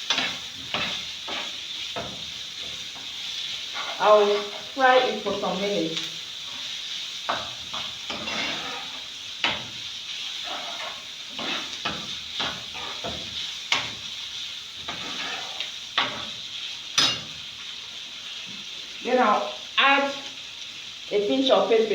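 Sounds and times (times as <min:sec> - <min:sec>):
chicken sizzling in oil: 0:00.0 - 0:21.9
spoon knocking against pan: 0:17.0 - 0:17.4.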